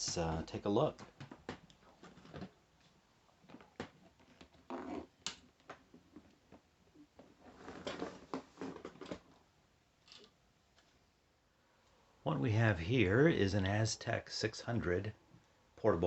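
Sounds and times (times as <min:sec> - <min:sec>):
rustling: 0:00.0 - 0:11.0.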